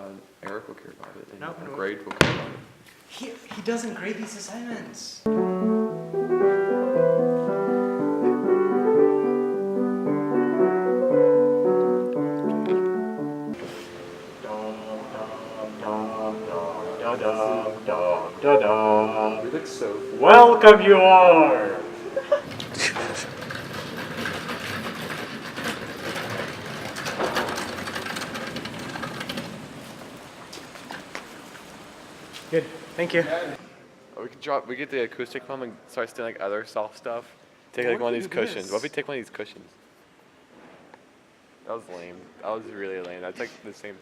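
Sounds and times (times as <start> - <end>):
piano music: 5.3 - 24.6
hard objects clattering: 22.4 - 30.1.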